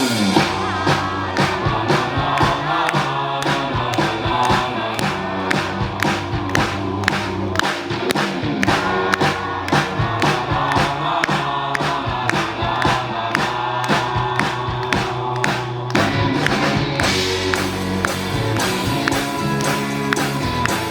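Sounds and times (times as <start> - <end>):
crowd noise: 0.0 - 20.9
drum hits: 0.0 - 20.9
live rock band playing: 14.3 - 20.9.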